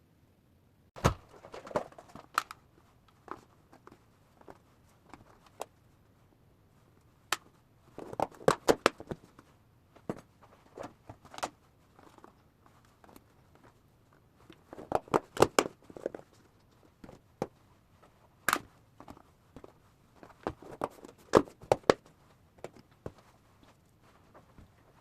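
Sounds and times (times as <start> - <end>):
household objects clicking and knocking: 14.4 - 17.6.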